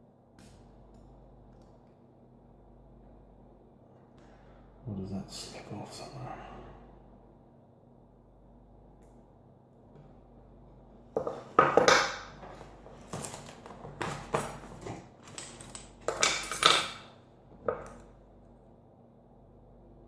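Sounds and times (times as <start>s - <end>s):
metal lock parts clinking: 11.2s - 18.1s.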